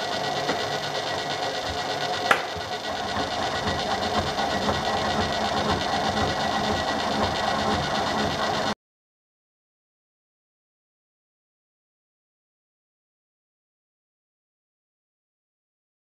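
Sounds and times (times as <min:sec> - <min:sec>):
metal lathe whirring: 0:00.0 - 0:08.8
sharp click: 0:02.2 - 0:02.7.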